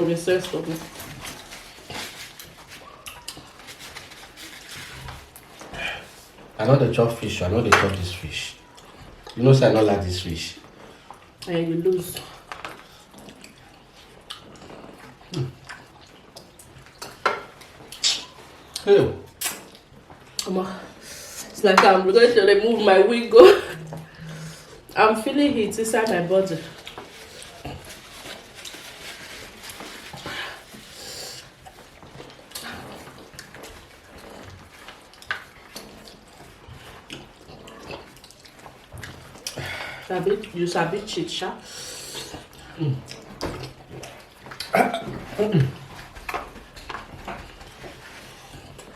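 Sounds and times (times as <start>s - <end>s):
wet chewing mouth sounds: 0.4s - 6.6s, 10.6s - 21.6s, 26.0s - 40.6s, 41.6s - 48.9s
breathy sound: 23.6s - 24.9s
sharp breaths: 24.0s - 24.9s, 41.6s - 42.4s.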